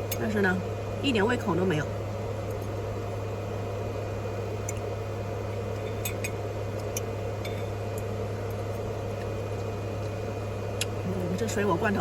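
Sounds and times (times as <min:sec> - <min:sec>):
air conditioner compressor: 0:00.0 - 0:12.0
cooling fan hum: 0:00.0 - 0:12.0.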